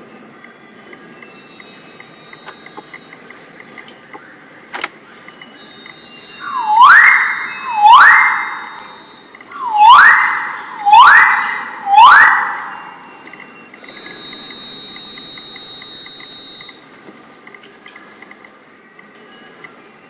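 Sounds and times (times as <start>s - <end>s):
bird whistling calls: 5.1s - 16.7s.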